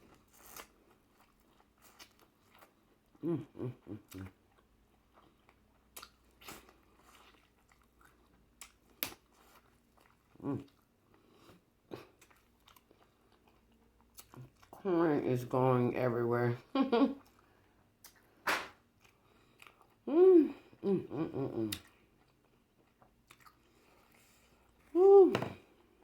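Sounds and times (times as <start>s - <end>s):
soft chewing with mouth clicks: 0.0s - 14.8s, 17.1s - 25.0s
person humming with enjoyment: 3.2s - 4.2s, 20.1s - 21.8s, 25.0s - 25.6s.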